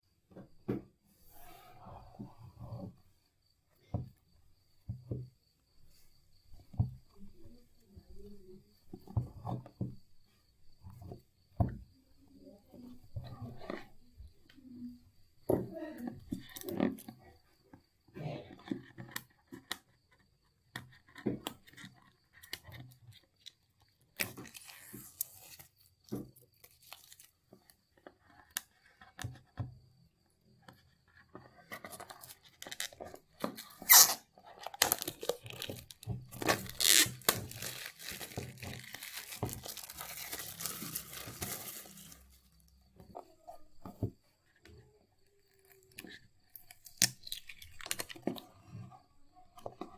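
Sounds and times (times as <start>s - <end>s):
plastic wrap tearing and crinkling: 33.7s - 42.5s
packaging rustles and clicks: 33.8s - 42.6s.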